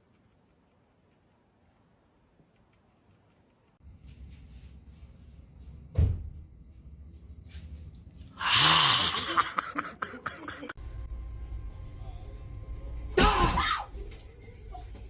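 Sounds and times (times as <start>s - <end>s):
dull thump: 5.9s - 6.4s
person crying out: 8.4s - 9.6s.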